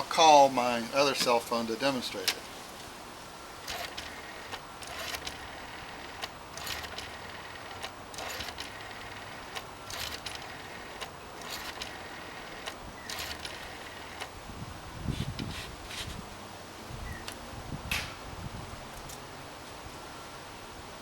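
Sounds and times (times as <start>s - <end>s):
rotary telephone dial clicking: 3.6s - 14.3s.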